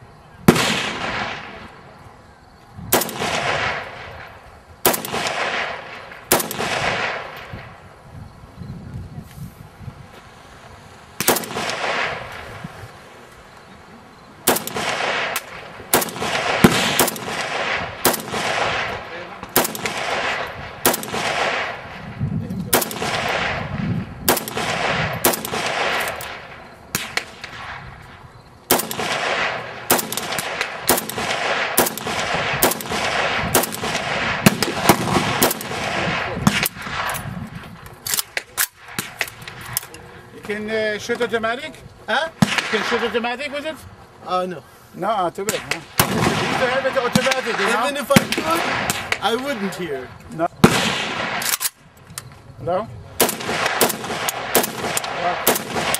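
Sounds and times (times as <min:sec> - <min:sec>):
rifle shots with echo: 0:00.4 - 0:01.8, 0:02.9 - 0:07.7, 0:11.2 - 0:12.7, 0:14.4 - 0:22.1, 0:22.7 - 0:37.3, 0:38.1 - 0:39.6, 0:42.4 - 0:43.3, 0:45.4 - 0:50.0, 0:50.6 - 0:51.8, 0:53.2 - 0:55.9.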